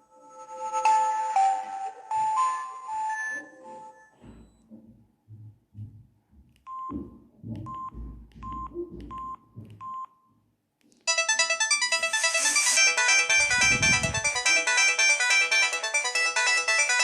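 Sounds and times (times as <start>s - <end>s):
polyphonic ringtone: 11.1s - 17.0s.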